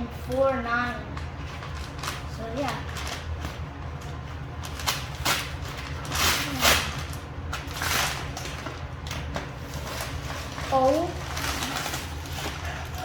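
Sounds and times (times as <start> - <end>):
packaging tearing: 4.6 - 13.0.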